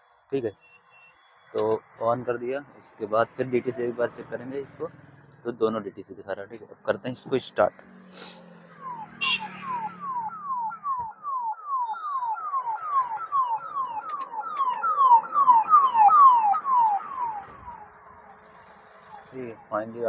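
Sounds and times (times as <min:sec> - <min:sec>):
electronic alarm falling tones: 0:08.6 - 0:18.3.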